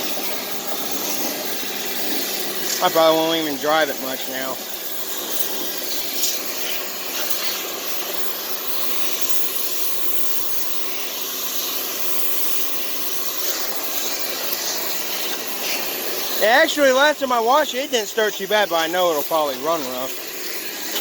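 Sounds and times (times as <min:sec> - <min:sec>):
pressure washer spraying: 0:00.0 - 0:21.0.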